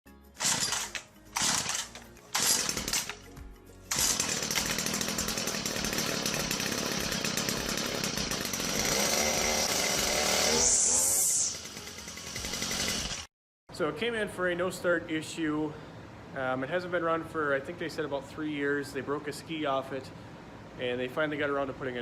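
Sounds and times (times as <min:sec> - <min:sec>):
music: 0:00.1 - 0:04.0
small engine revving: 0:00.4 - 0:03.2, 0:03.9 - 0:13.3.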